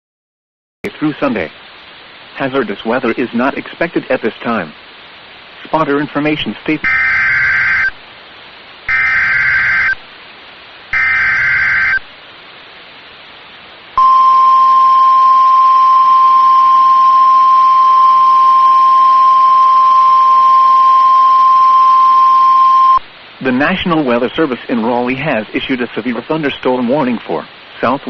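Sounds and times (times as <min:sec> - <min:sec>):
screechy digital data bursts: 0:06.8 - 0:08.0, 0:08.9 - 0:10.0, 0:10.9 - 0:12.1
steady warning alarm tone: 0:06.8 - 0:08.0, 0:08.9 - 0:10.0, 0:10.9 - 0:12.1, 0:14.0 - 0:23.0.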